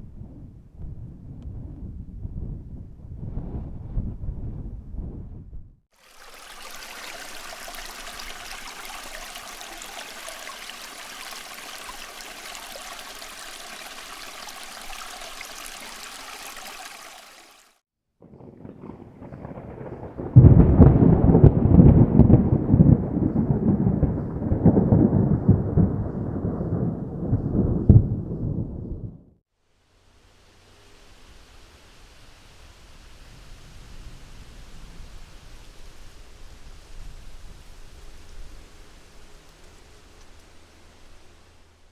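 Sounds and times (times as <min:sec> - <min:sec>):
steady hiss: 0:06.0 - 0:17.7, 0:29.6 - 0:41.9
rolling thunder: 0:18.2 - 0:29.4.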